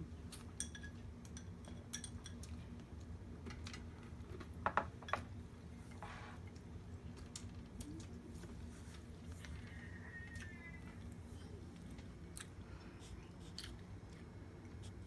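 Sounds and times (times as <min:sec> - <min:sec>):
low steady hum: 0:00.0 - 0:15.0.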